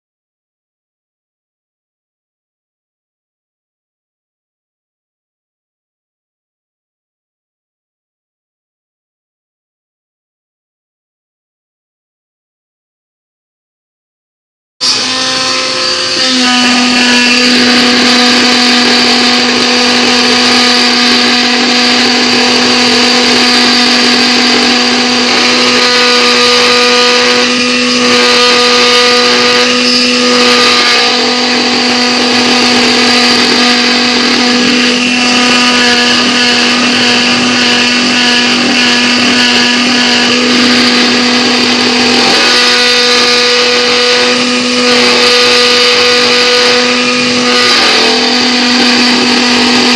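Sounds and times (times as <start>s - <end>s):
milling machine spindle whine: 14.8s - 49.9s.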